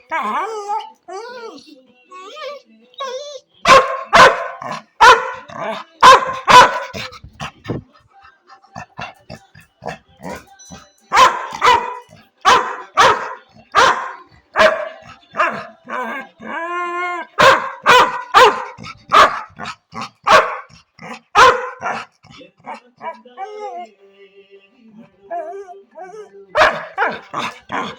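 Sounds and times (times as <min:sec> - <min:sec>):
dog howling: 0:00.0 - 0:07.2, 0:11.2 - 0:23.9, 0:25.3 - 0:27.9
dog yipping: 0:02.2 - 0:05.4, 0:11.1 - 0:19.5, 0:20.3 - 0:22.1
dog barking: 0:03.6 - 0:07.6, 0:11.1 - 0:16.3, 0:17.2 - 0:23.8, 0:26.6 - 0:27.9.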